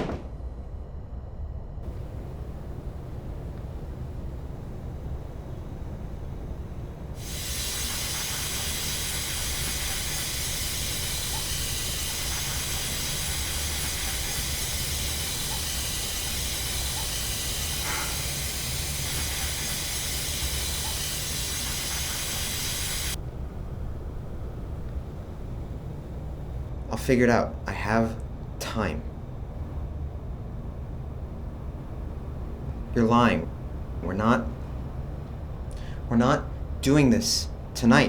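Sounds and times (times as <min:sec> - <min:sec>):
low steady hum: 0:00.0 - 0:38.0
steady hiss: 0:01.8 - 0:23.2.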